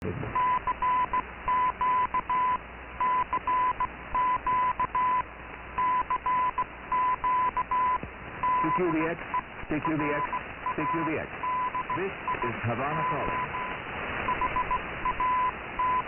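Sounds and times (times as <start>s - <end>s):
shortwave background hiss: 0.1s - 16.0s
morse code tone: 5.8s - 9.0s, 9.8s - 13.7s, 14.3s - 16.0s.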